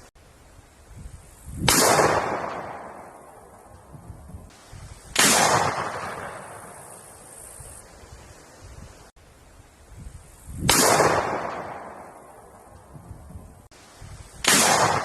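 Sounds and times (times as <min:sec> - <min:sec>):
gunshots with echo: 0:01.7 - 0:03.2, 0:05.2 - 0:06.8, 0:10.7 - 0:12.2, 0:14.4 - 0:15.0.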